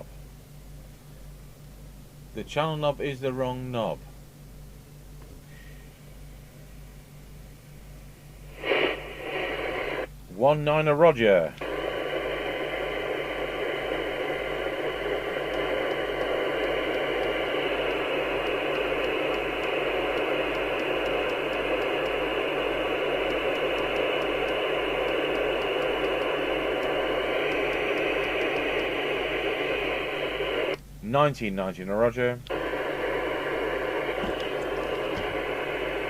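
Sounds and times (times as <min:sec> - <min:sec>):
radio static hiss: 0:08.0 - 0:36.0.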